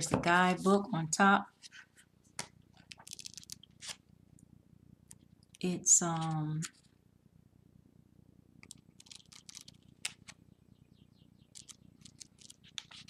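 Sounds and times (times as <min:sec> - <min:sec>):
paper and packaging handled: 0:02.8 - 0:04.0, 0:11.6 - 0:13.0.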